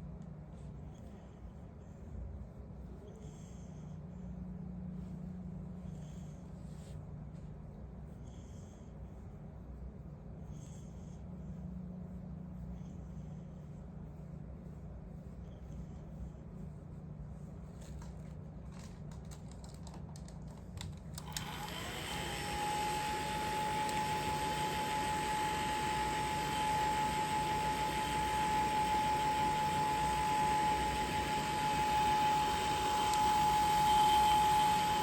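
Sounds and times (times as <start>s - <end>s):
faint low hum: 0.0s - 35.0s
hair dryer running: 21.2s - 35.0s.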